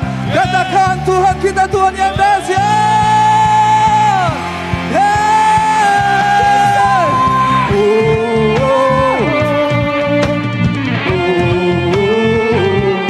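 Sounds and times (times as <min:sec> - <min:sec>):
drum beat: 0:00.0 - 0:12.4
steady bass: 0:00.0 - 0:13.0
long sliding high notes: 0:01.8 - 0:10.1.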